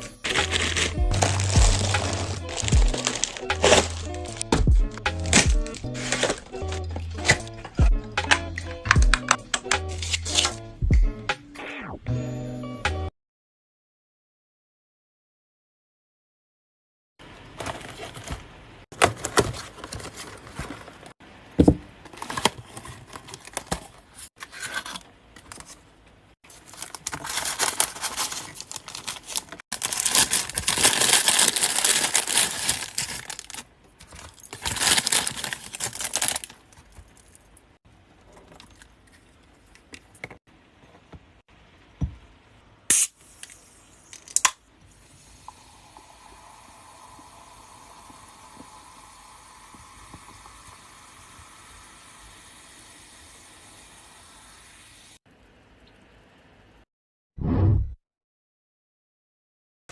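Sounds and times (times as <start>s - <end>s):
plastic and paper tearing: 0.0s - 7.4s, 26.5s - 37.3s.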